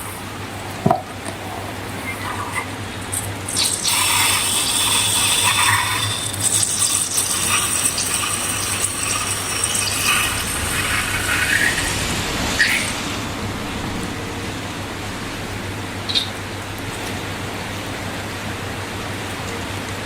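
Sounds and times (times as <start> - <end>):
liquid pouring into container: 0.0 - 13.1.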